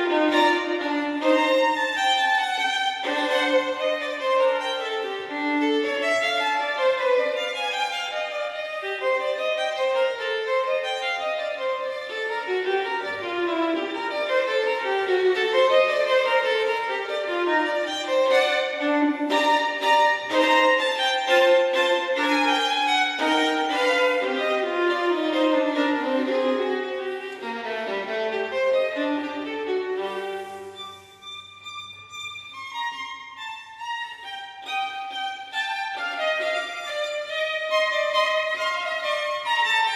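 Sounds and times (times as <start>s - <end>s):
violin melody: 0.0s - 39.9s.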